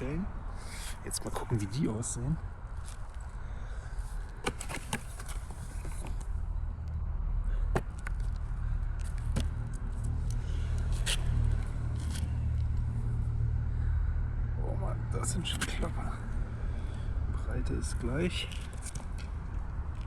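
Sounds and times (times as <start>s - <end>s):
steady low rumble: 5.3s - 20.0s.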